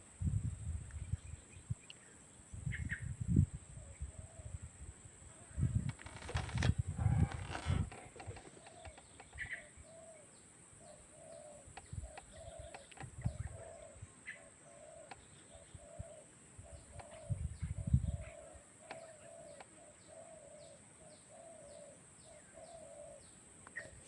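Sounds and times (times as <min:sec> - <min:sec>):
low rumbling thumps: 0:05.6 - 0:09.3.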